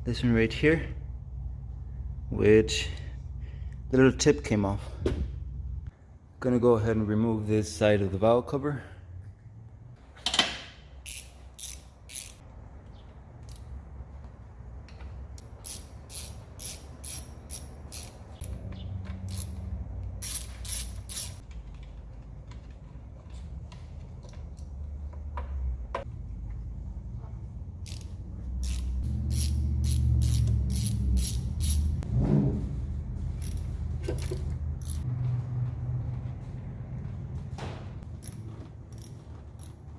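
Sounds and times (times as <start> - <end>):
ratchet wrench clicking: 11.0 - 12.4, 15.3 - 21.4, 27.8 - 31.9, 33.4 - 35.1, 38.2 - 39.8.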